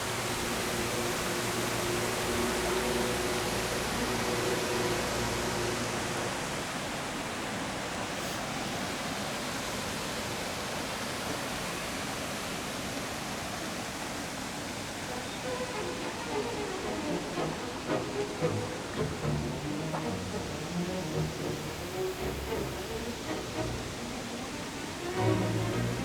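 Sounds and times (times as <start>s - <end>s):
steady tones: 0.0s - 6.7s, 15.1s - 26.0s
steady rushing noise: 0.0s - 7.8s, 15.0s - 26.0s.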